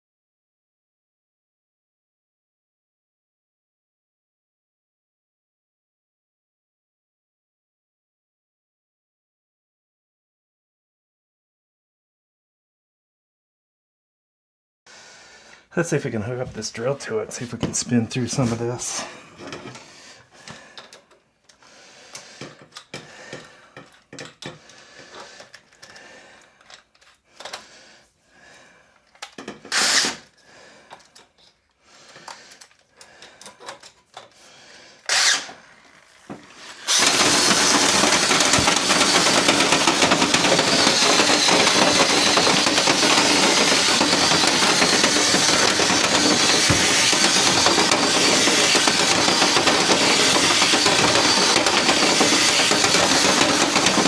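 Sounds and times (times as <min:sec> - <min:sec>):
power drill spinning brush: 0:14.9 - 0:54.0
handling clatter: 0:36.3 - 0:54.0.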